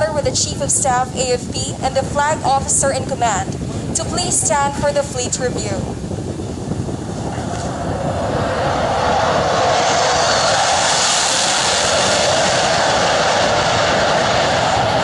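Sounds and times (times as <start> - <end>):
fighter jet flypast: 5.9 - 15.0.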